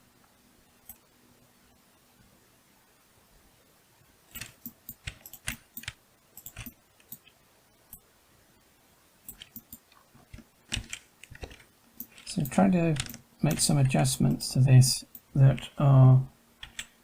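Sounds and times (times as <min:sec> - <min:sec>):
keyboard and mouse clicks: 0:04.3 - 0:08.0, 0:09.3 - 0:13.6, 0:16.6 - 0:17.0.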